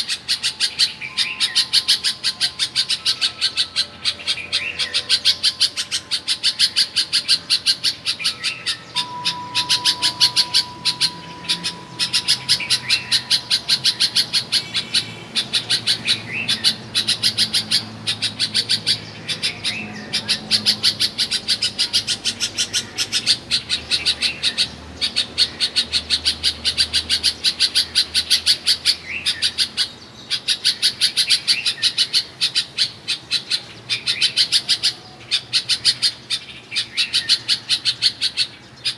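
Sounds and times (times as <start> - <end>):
bird chirping rapidly: 0.2 - 38.9
bird warbling: 0.7 - 24.0.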